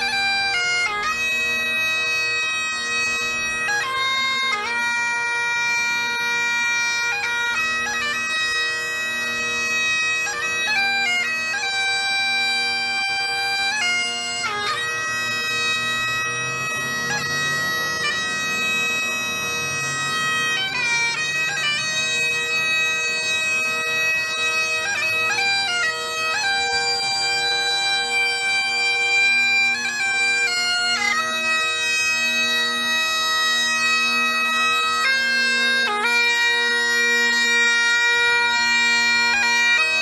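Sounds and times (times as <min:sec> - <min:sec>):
bagpipes playing slow tune: 0:00.0 - 0:40.0.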